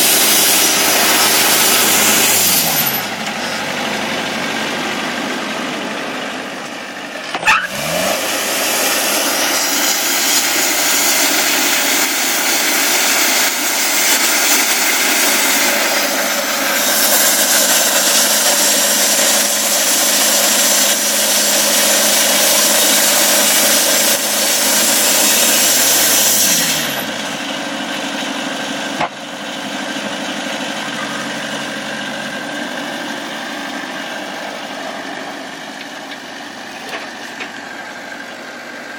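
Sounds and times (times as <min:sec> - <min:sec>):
loud hissing saw cut: 0:00.0 - 0:04.1, 0:07.5 - 0:27.5
sawmill engine running: 0:00.0 - 0:38.9.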